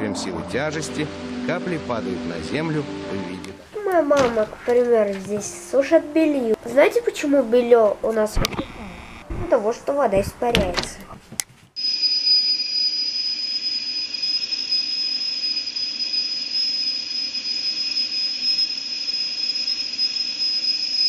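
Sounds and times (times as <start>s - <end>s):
high-pitched whine: 0.0s - 4.8s, 11.8s - 21.0s.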